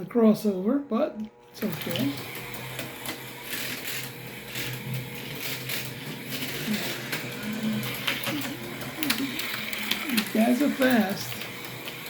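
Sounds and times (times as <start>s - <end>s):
small electric motors whirring: 1.3s - 12.0s.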